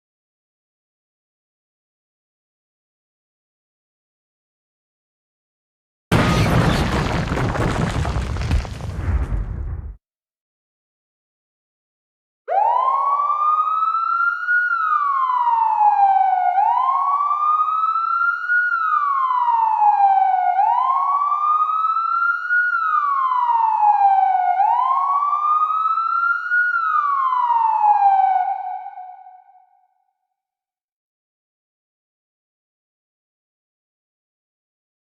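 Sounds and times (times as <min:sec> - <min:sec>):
police siren wailing: 0:12.5 - 0:29.7.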